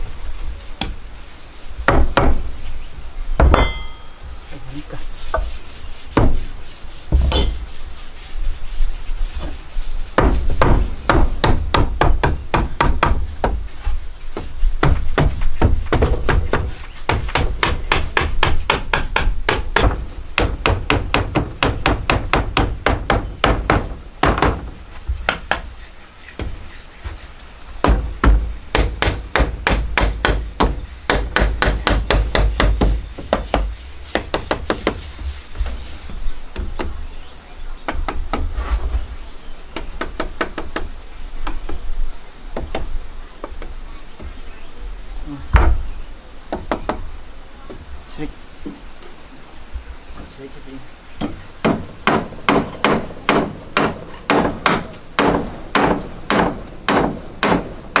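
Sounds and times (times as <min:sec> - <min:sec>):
hammer blows on wood: 0:27.8 - 0:37.0.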